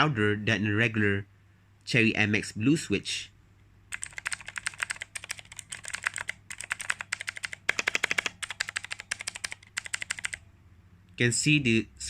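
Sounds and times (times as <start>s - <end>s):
mechanical keyboard typing: 3.9s - 10.4s.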